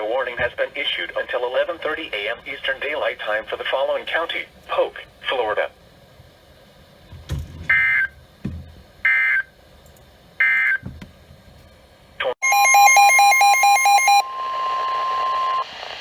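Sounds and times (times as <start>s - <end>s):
steady warning alarm tone: 12.4s - 15.6s.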